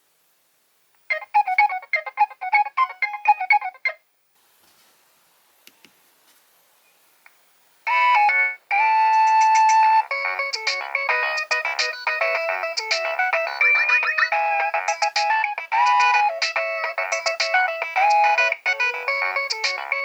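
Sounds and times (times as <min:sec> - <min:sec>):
mobile phone ringtone: 0:07.9 - 0:20.0.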